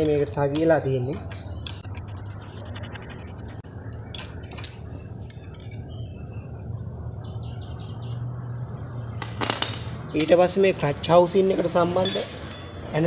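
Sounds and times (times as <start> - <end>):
spanner clinking on metal: 0.0 - 2.0, 4.1 - 5.8, 9.2 - 10.4, 12.0 - 13.0.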